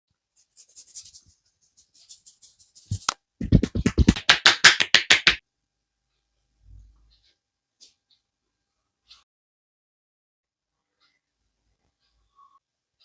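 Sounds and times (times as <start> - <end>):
hands rubbing head: 0.4 - 5.4
hand taps on head: 3.0 - 5.4.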